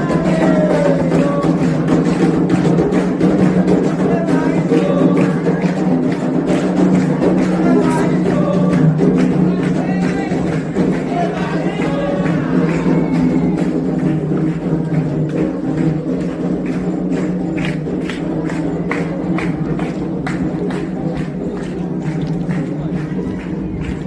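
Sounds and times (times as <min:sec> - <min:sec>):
voices singing: 0:00.0 - 0:02.3, 0:03.6 - 0:13.9
fast drum strokes: 0:00.0 - 0:23.1.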